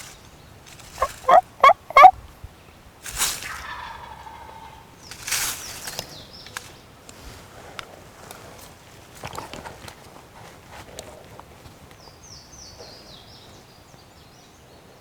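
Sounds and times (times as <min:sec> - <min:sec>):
turkey gobbling: 0:01.0 - 0:02.2, 0:03.6 - 0:04.8.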